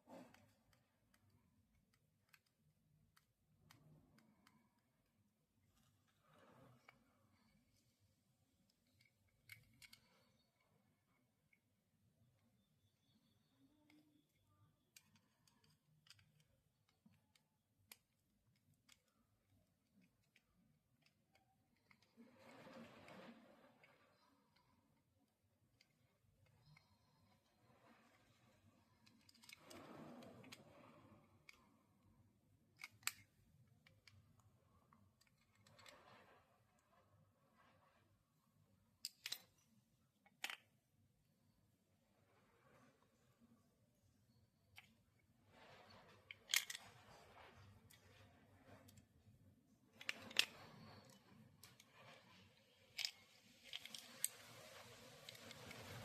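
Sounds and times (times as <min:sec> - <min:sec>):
faint background noise: 0:00.0 - 0:56.0
soft rustling scrape: 0:22.2 - 0:24.5, 0:41.9 - 0:44.4, 0:45.3 - 0:56.0.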